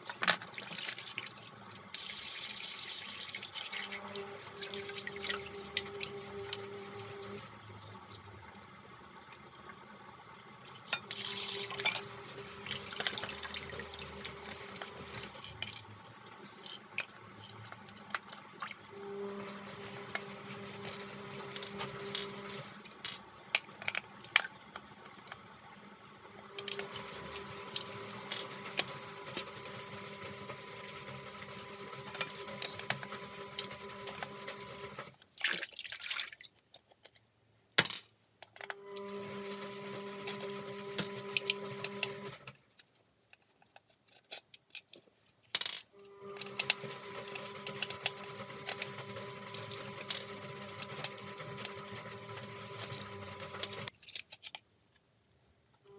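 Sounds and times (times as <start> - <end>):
plastic parts clicking and knocking: 0.0 - 1.0, 14.4 - 18.9, 20.0 - 25.5, 36.6 - 38.8, 40.3 - 46.8, 52.8 - 55.1.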